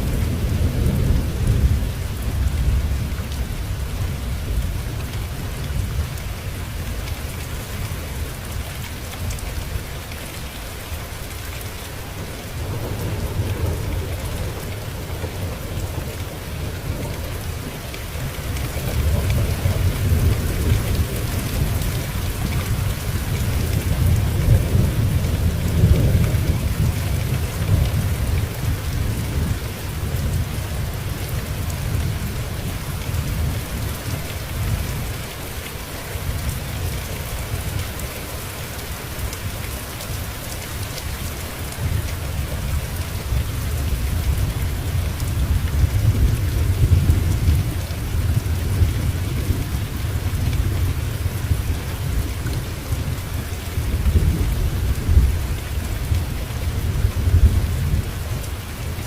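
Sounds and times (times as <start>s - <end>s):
low rolling thunder: 0.0s - 6.5s, 12.1s - 35.2s, 41.6s - 59.0s
heavy rain: 0.0s - 59.0s.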